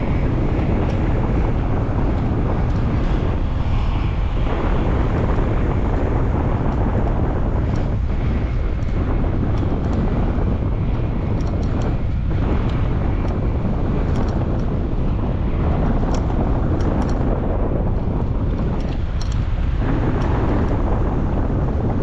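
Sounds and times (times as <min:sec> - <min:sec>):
wind buffeting microphone: 0:00.0 - 0:22.0
faint ticks: 0:18.5 - 0:19.4.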